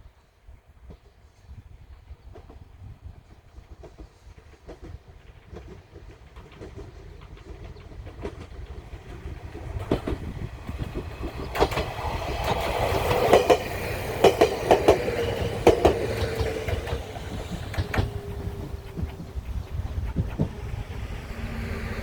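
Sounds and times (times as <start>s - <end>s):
train wheels clacking over rail joints: 3.4s - 22.0s
electric train whine: 5.7s - 22.0s.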